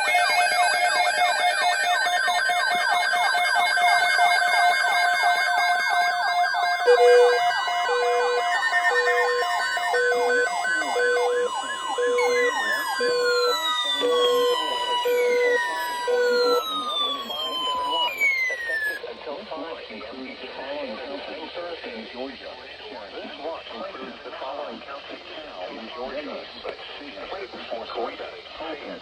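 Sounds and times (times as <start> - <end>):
beeping tone: 0.0 - 19.0
electronic sirens yelping: 0.0 - 19.0.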